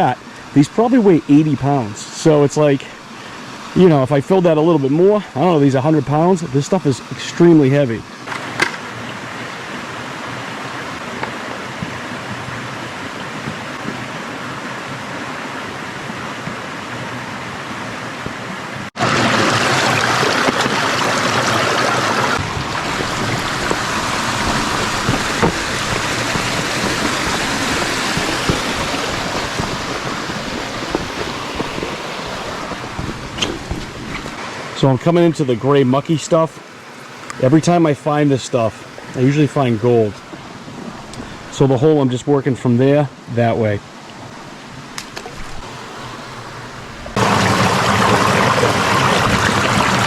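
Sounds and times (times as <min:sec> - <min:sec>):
brook water rushing over rock: 0:18.9 - 0:42.0, 0:43.9 - 0:50.0.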